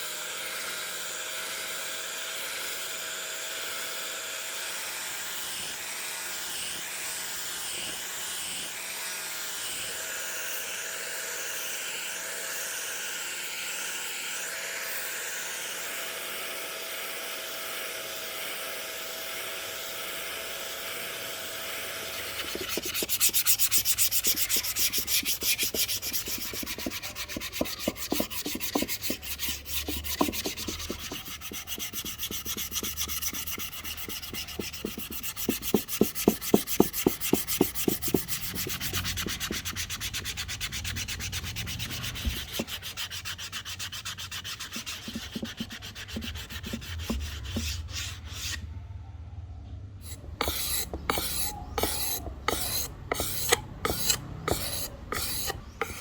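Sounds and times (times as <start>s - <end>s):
sandpaper rubbing wood: 22.1s - 48.6s, 50.0s - 56.0s.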